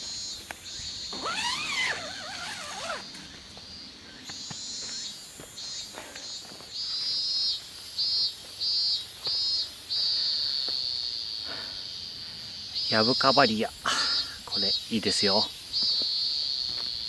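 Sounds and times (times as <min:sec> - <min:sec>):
insects chirping in pulses: 0:00.0 - 0:17.0.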